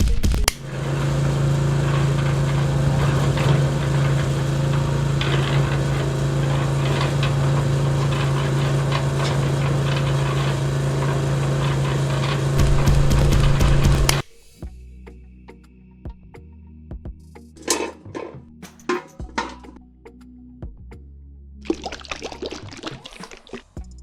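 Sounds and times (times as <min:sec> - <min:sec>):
small motor humming: 0:00.5 - 0:14.2.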